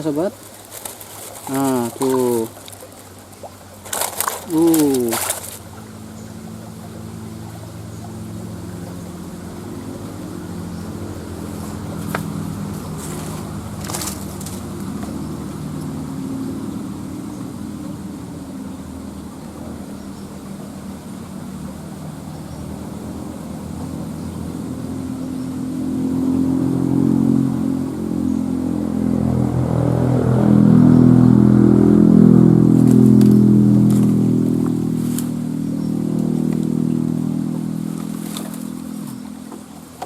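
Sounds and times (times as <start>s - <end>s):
motor engine humming: 0.0s - 40.0s.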